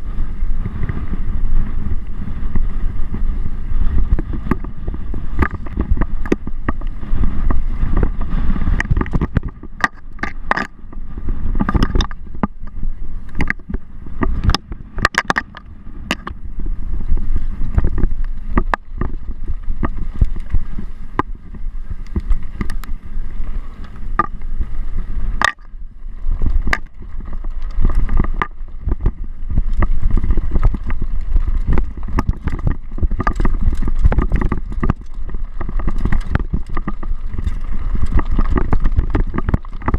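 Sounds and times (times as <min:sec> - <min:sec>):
bike clacking and rattling: 0:00.0 - 0:39.9
wind buffeting microphone: 0:00.0 - 0:39.9.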